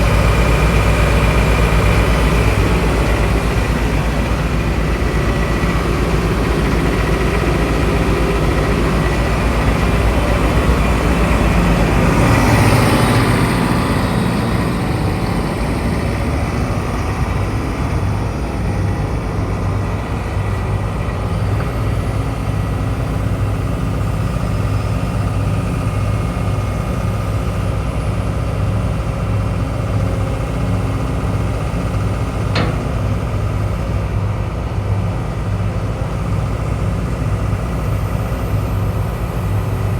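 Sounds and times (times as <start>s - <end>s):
excavator diesel engine running: 0.0s - 39.9s
sharp click: 32.5s - 33.6s.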